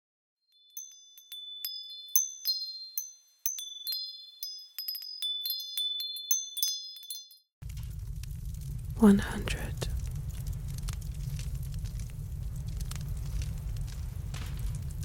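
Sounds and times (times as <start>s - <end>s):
wind chimes ringing: 0.5s - 7.6s.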